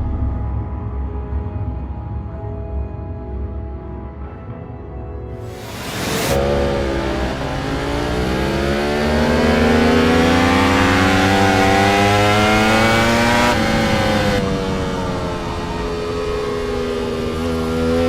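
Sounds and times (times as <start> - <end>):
motorcycle engine accelerating: 5.5 - 18.0.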